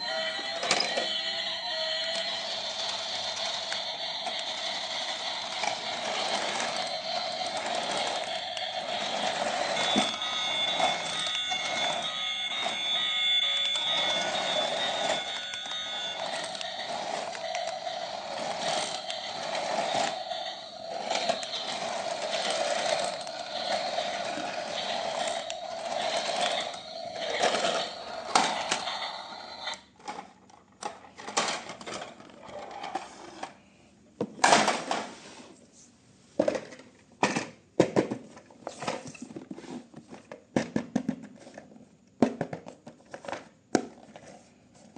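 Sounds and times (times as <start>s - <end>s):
electric toy whirring: 0.0s - 33.6s.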